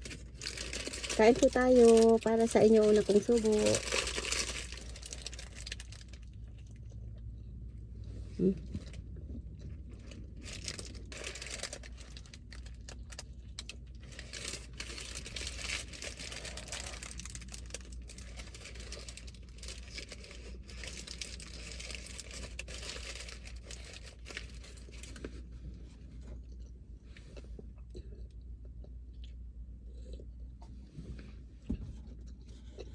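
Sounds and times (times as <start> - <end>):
paper wrappers crinkling and tearing: 0.0 - 6.3, 10.0 - 25.4
person chewing: 16.0 - 22.7, 26.2 - 30.5, 32.1 - 32.9.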